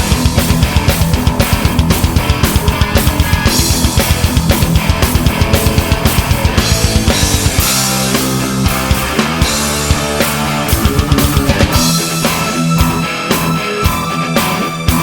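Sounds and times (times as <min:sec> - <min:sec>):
rapid bass drum beats: 0:00.0 - 0:15.0
rock band playing: 0:00.0 - 0:15.0.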